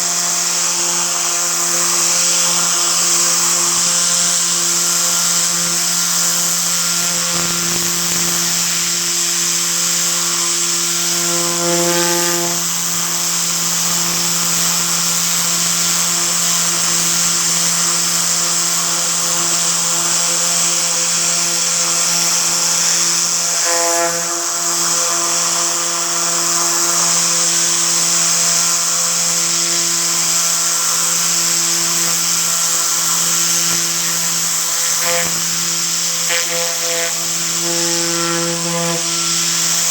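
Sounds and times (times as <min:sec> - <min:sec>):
compressed air hissing: 0:00.0 - 0:39.9.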